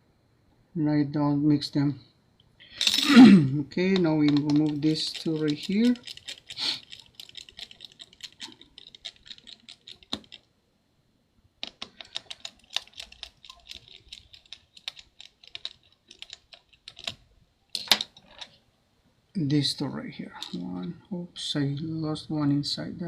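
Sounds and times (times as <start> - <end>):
screwdriver ticking: 3.9 - 10.5, 11.6 - 17.2.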